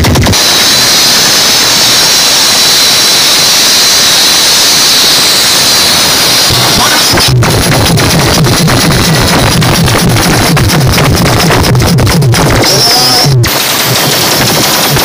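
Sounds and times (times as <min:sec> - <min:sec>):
fast pounding beat: 0:00.0 - 0:01.0, 0:03.4 - 0:15.0
loud hiss with high whistling: 0:00.4 - 0:07.2.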